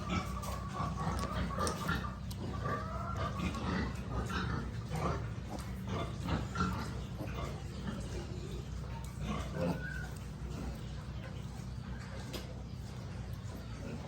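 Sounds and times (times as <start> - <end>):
piglets squealing: 0.0 - 11.0
pig grunts: 0.0 - 11.5, 13.6 - 14.0
steady low hum: 0.0 - 14.0.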